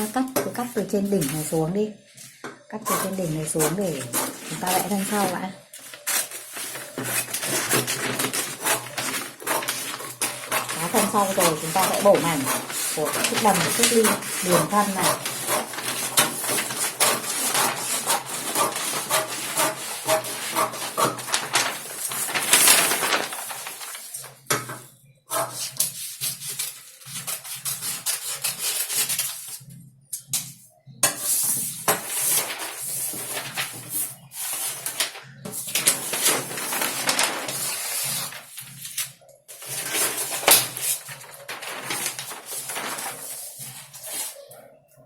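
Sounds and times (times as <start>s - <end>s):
fabric rustling and scraping: 2.2s - 24.2s, 31.3s - 44.4s.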